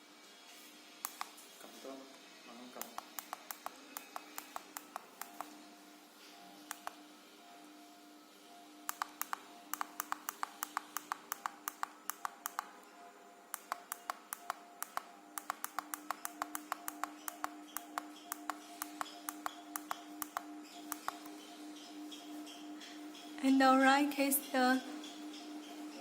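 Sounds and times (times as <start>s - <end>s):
steady hum: 0.0s - 26.0s
rapid sharp clicks: 1.0s - 1.4s, 2.8s - 5.6s, 8.9s - 12.7s, 13.5s - 22.2s.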